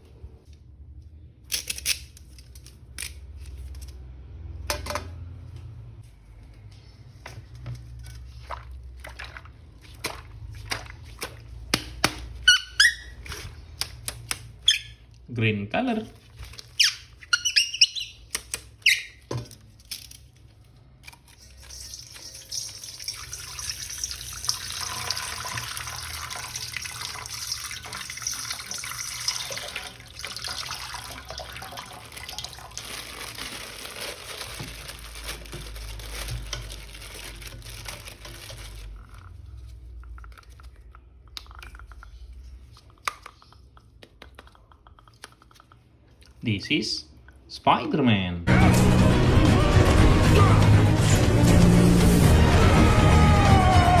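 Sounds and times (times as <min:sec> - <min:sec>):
water running from a tap: 0:21.6 - 0:32.8.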